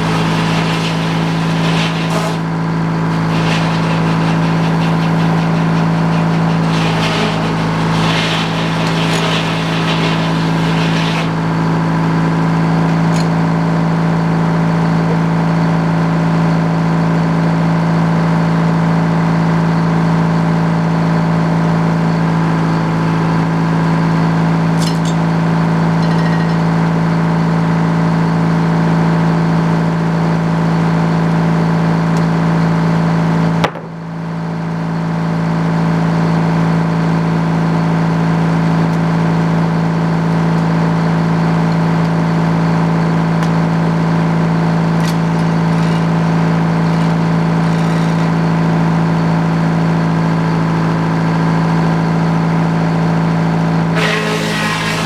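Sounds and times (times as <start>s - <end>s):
sawmill engine humming: 0.0s - 15.9s, 53.6s - 55.0s.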